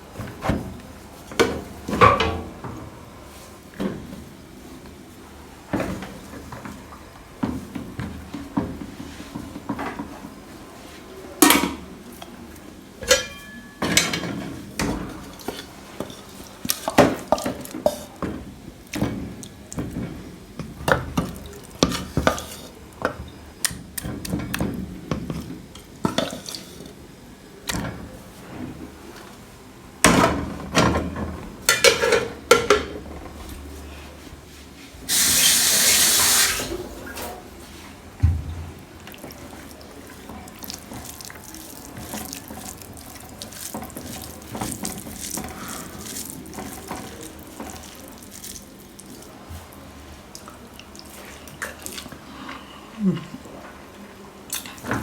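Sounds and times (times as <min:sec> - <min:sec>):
dishes and pots clattering: 0:01.3 - 0:02.7, 0:13.0 - 0:23.4, 0:24.0 - 0:27.0, 0:30.0 - 0:33.1.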